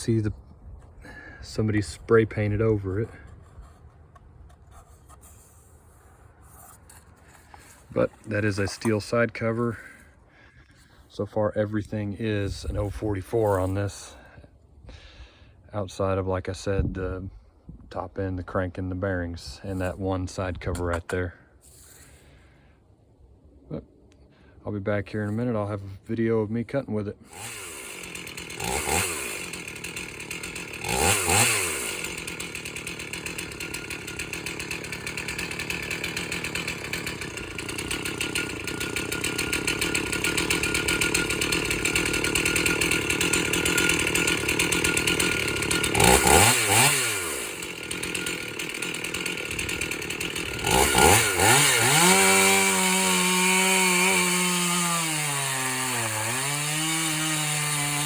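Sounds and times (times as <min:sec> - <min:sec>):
chainsaw idling and revving: 0:00.0 - 0:03.9, 0:06.5 - 0:11.2, 0:11.9 - 0:14.3, 0:27.2 - 0:58.0
chainsaw cutting into log: 0:00.8 - 0:10.1, 0:12.3 - 0:14.0, 0:27.2 - 0:58.0.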